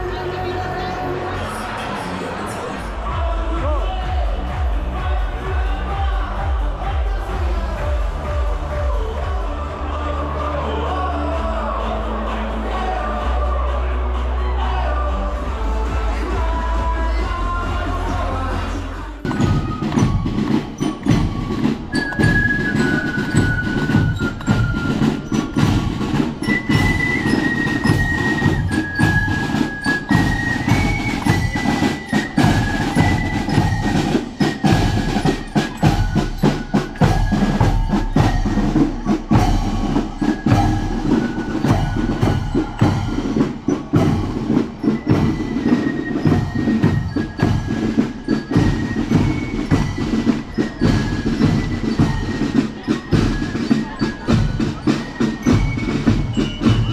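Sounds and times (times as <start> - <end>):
steady drum beat: 2.9 - 10.2, 15.3 - 56.9
high melody notes: 19.2 - 56.9.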